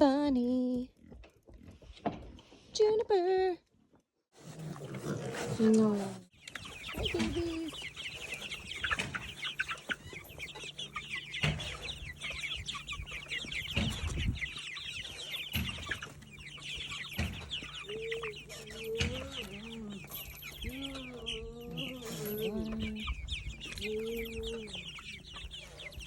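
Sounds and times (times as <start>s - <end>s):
chickens clucking: 1.0s - 2.6s, 4.4s - 26.0s
low wavering chicken calls: 6.4s - 26.0s.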